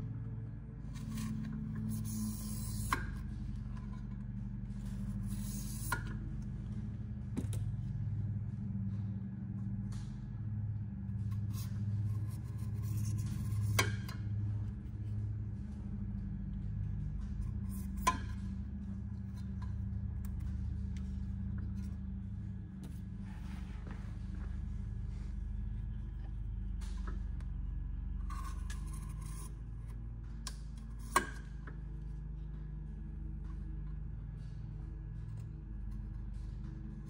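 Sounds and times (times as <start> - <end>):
steady low hum: 0.0 - 37.0
razor blade scraping: 1.0 - 3.9, 4.8 - 6.2, 11.3 - 14.3, 17.5 - 18.5, 28.2 - 29.5.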